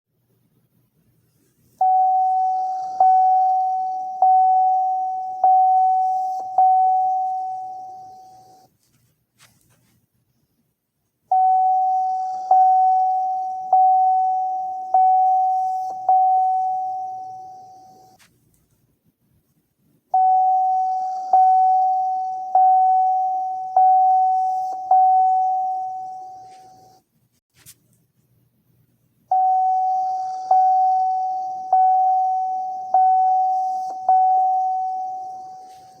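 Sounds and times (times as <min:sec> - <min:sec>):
car door warning chime: 0:01.8 - 0:08.5, 0:11.3 - 0:18.1, 0:20.2 - 0:26.6, 0:29.3 - 0:35.9.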